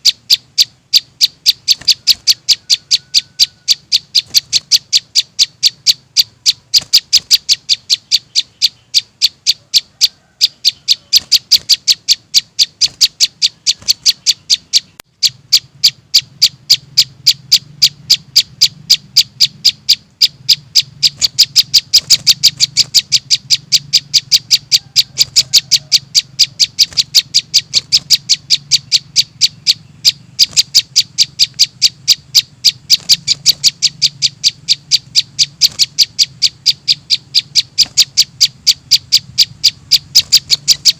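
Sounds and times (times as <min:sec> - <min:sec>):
young birds' high begging chirps: 0:00.0 - 0:40.9
low steady hum: 0:10.5 - 0:40.9.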